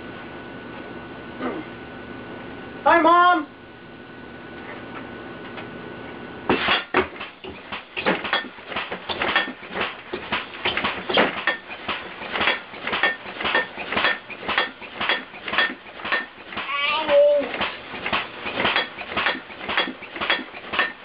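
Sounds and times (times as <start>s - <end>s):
faint hum with high tone: 0.0s - 7.0s
metal clanging like pots: 6.5s - 16.7s.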